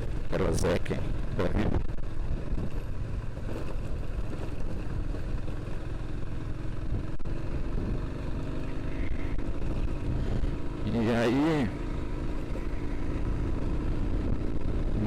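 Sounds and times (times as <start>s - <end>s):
motorcycle engine running: 0.0s - 15.0s
wind noise on microphone: 1.6s - 5.2s.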